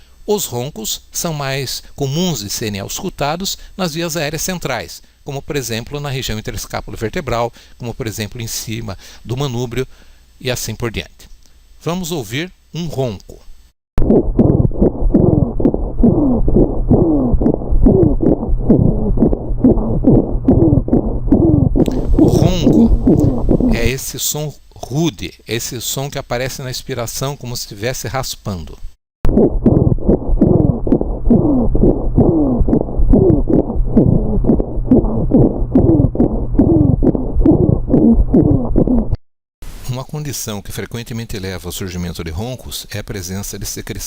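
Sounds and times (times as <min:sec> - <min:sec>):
steady low rumble: 0:14.0 - 0:24.0, 0:29.3 - 0:39.1
coarse lung rhonchi: 0:14.0 - 0:24.1, 0:29.3 - 0:39.1
rough scraping breath sounds: 0:21.8 - 0:23.9.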